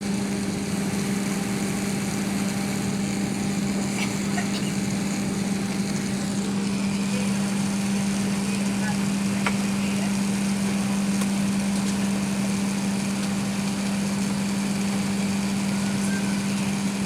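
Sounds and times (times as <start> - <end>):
airplane cabin drone: 0.0 - 10.2, 15.0 - 17.0.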